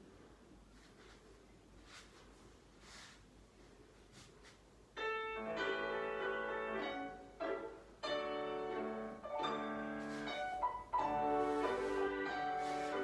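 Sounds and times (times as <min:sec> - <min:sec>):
solo piano slow chords: 0:05.0 - 0:13.0.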